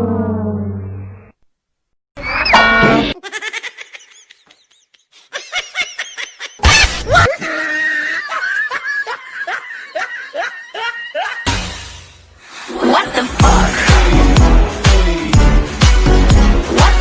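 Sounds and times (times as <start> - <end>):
tone falling in pitch: 0.0 - 1.3
rapid giggling laughter: 3.2 - 11.5.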